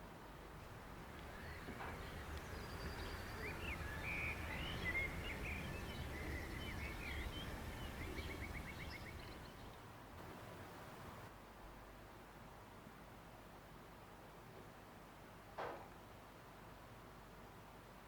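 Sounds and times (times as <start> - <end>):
low outdoor rumble: 0.4 - 11.3
small birds chirping: 0.6 - 11.2.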